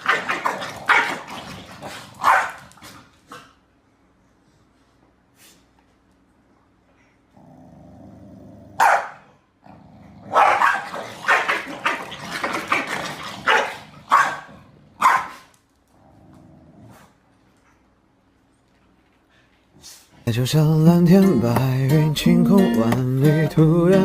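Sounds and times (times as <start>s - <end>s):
dog barking: 0.0s - 1.3s, 2.2s - 2.6s, 8.8s - 9.3s, 10.3s - 12.1s, 12.7s - 15.4s.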